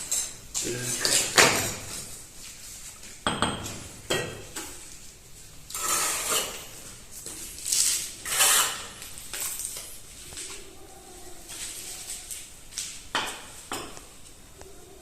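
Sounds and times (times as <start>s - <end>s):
trowel scraping mortar: 5.7s - 6.8s, 7.6s - 9.1s.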